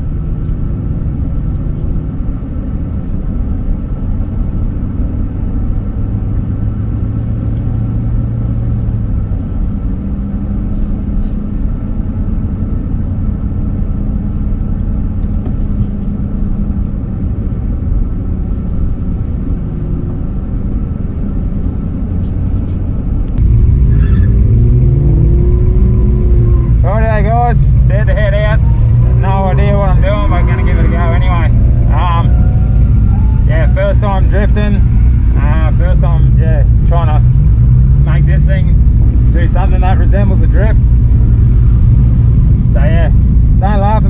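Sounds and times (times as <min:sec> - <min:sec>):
vehicle engine rumbling: 0:00.0 - 0:44.0.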